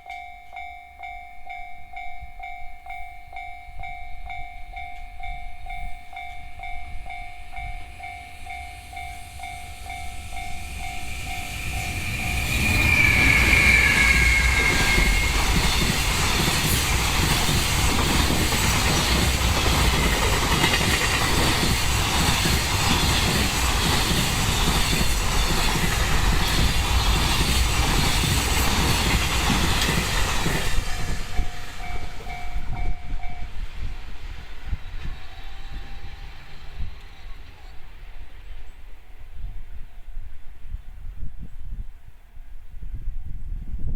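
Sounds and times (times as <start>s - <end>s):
freight train rumbling: 1.9s - 39.7s
high tone falling in pitch: 6.7s - 15.8s.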